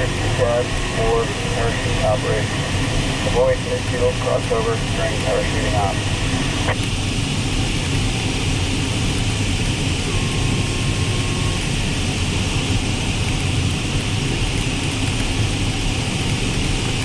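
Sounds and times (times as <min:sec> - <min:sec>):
rushing airflow in cockpit: 0:00.0 - 0:13.0.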